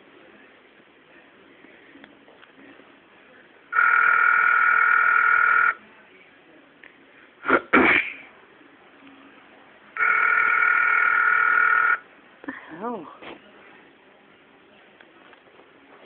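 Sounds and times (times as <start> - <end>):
telephone ringback tone: 3.7 - 5.8, 10.0 - 12.0.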